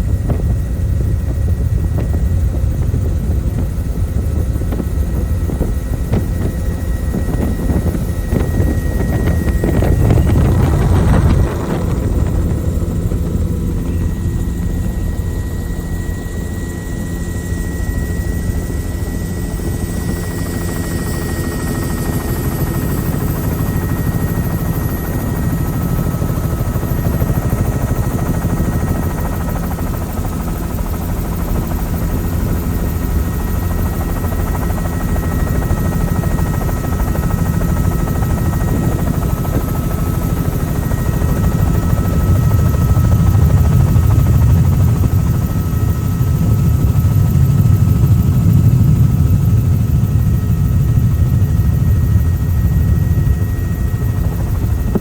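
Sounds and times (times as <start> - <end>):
helicopter rotor beat: 0.0 - 55.0
engine noise: 3.4 - 16.2.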